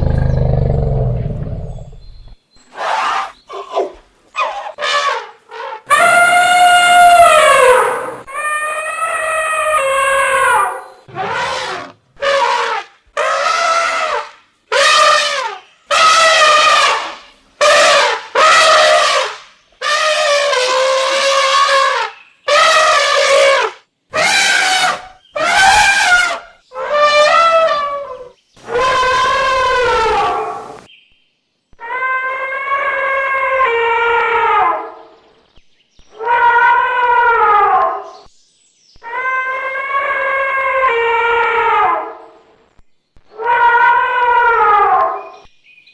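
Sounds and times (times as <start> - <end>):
elephant trumpeting: 0.0 - 2.0, 2.7 - 30.8, 43.4 - 45.2.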